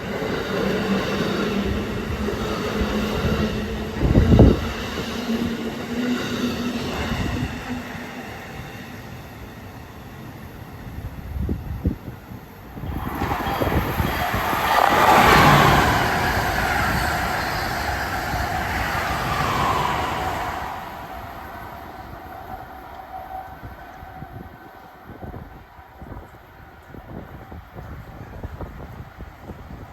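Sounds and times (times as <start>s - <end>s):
passenger train passing: 0.0s - 29.9s.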